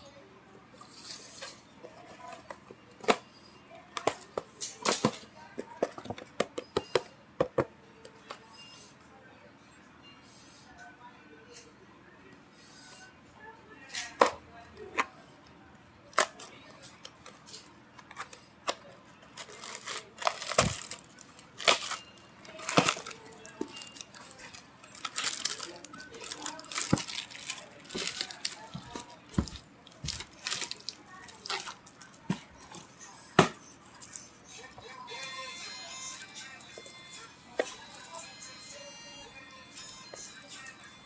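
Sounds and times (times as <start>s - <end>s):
package rustling: 19.4s - 31.9s.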